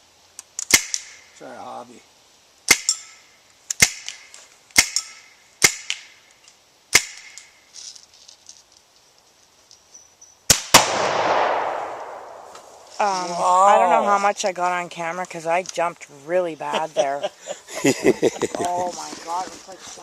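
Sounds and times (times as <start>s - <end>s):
airgun shots: 10.5s - 12.8s
exploding target boom: 10.7s - 12.8s.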